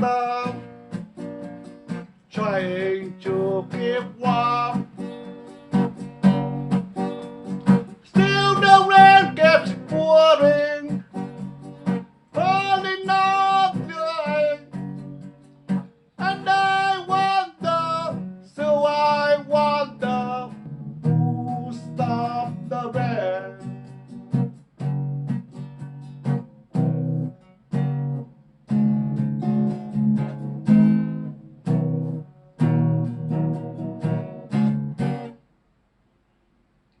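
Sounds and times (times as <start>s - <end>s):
tenor voice singing: 0.0s - 0.7s, 2.4s - 4.8s, 8.1s - 11.0s, 12.4s - 14.7s, 16.2s - 23.7s
strummed acoustic guitar: 0.0s - 35.4s.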